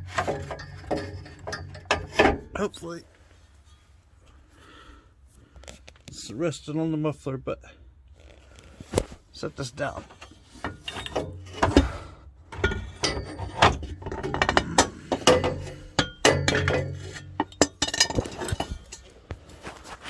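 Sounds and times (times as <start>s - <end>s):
metal clanks and knocks: 0.0s - 2.6s, 9.9s - 19.3s.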